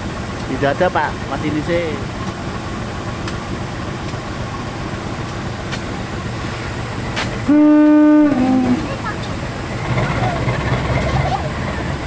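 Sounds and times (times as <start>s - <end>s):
diesel locomotive horn blast: 7.4s - 9.3s.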